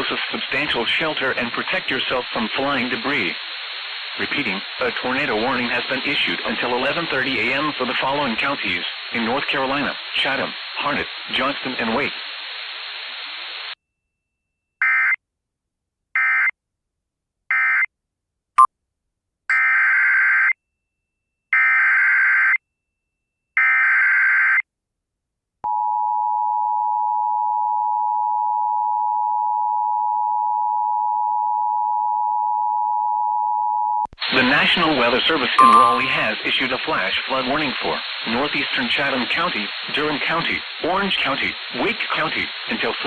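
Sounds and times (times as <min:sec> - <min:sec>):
two-tone attention signal: 0:35.6 - 0:36.3
short data bursts: 0:35.6 - 0:36.4.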